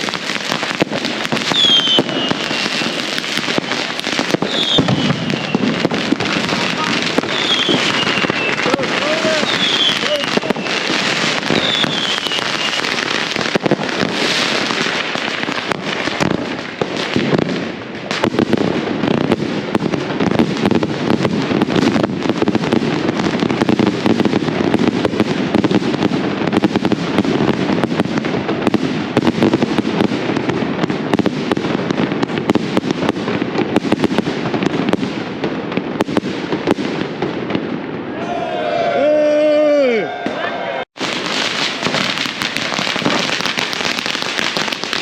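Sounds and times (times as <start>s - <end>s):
firecracker bangs: 0.0s - 38.2s, 40.2s - 45.0s
falling whistle: 11.6s - 12.8s.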